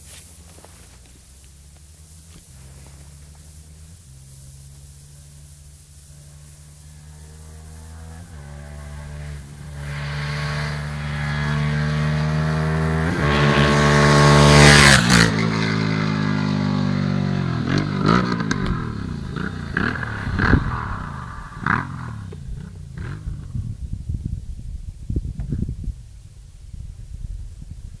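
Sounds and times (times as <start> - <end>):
motorcycle engine revving: 0.0 - 25.9
exhaust pops: 6.2 - 24.4.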